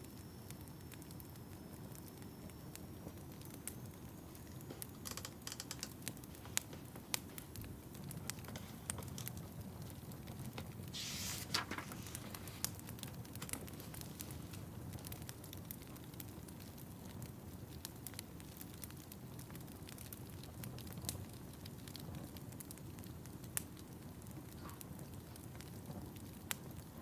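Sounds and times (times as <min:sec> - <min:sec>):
fire crackling and popping: 0:00.0 - 0:27.0
hissing burst: 0:11.0 - 0:12.0.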